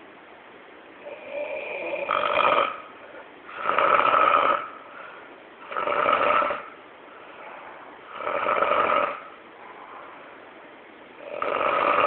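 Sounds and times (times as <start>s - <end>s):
loud snores: 1.0s - 2.9s, 3.5s - 4.8s, 5.6s - 6.8s, 8.1s - 9.4s, 11.2s - 12.0s.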